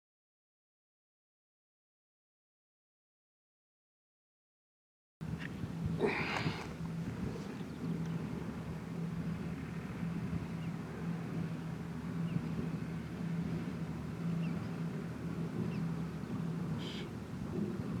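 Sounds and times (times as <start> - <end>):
faint low hum: 5.2 - 18.0
wind buffeting microphone: 5.2 - 18.0.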